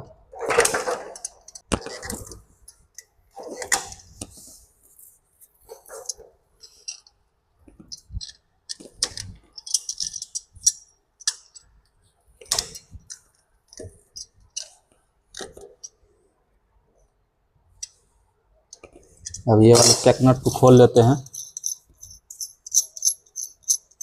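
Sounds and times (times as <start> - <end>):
metallic clicks and clinks: 7.8 - 11.7, 18.7 - 24.0.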